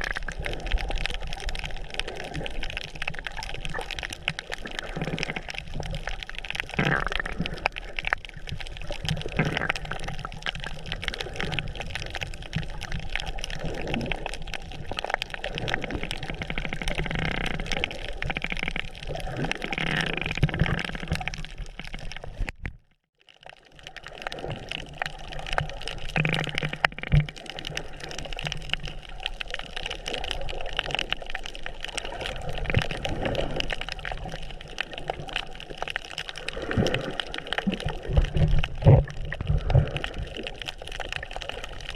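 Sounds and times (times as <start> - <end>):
water sloshing and gurgling: 0.0 - 41.9.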